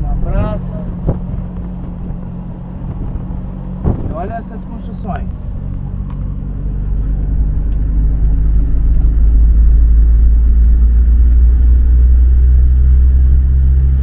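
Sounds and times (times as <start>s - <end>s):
van engine and road noise: 0.0s - 14.0s.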